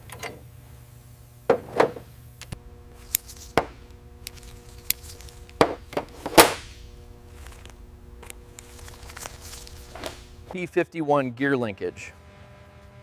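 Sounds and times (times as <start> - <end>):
steady low hum: 1.5 - 10.6
sharp knocks and taps: 2.5 - 6.6.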